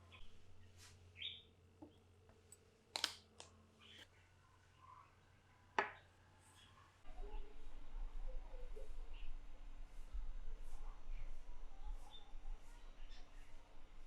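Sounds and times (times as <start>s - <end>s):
low steady hum: 7.0s - 14.0s.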